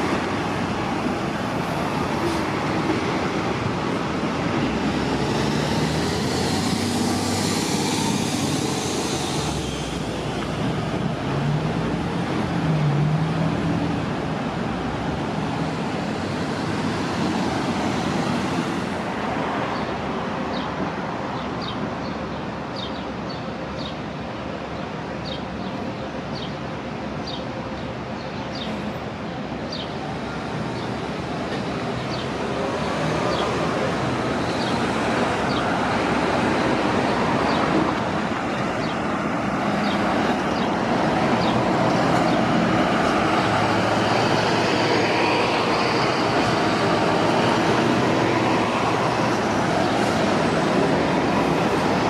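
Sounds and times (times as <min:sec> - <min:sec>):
bus engines running: 0:00.0 - 0:52.0
loud hissing: 0:06.2 - 0:10.3.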